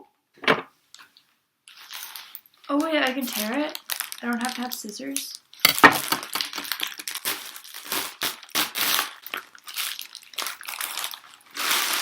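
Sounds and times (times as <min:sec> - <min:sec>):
plastic bag tearing and crinkling: 0:01.7 - 0:12.0.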